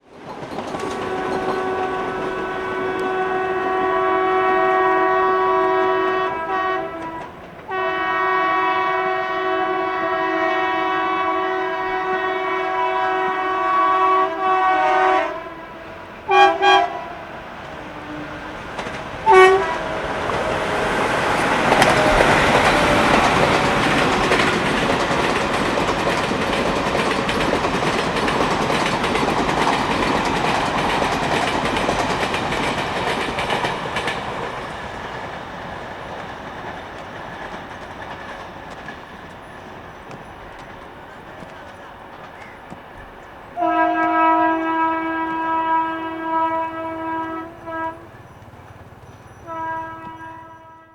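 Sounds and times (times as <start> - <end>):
train wheels clattering on rails: 0.0 - 50.7
locomotive horn blasts: 0.9 - 18.6, 19.2 - 25.4, 43.5 - 48.3, 49.4 - 50.9.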